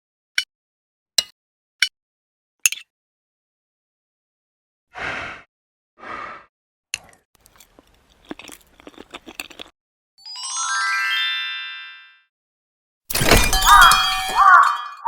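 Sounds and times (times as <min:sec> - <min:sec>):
rising chime glissando: 0:10.2 - 0:12.2.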